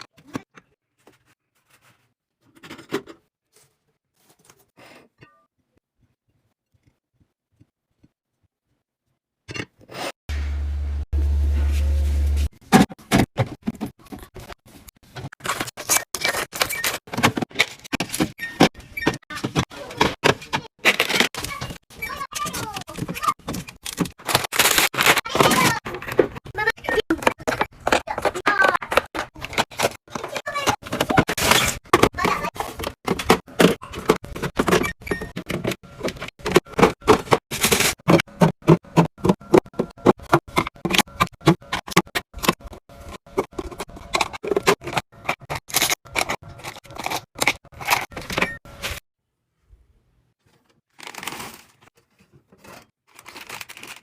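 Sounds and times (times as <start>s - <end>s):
containers clicking and clinking: 22.4s - 48.6s.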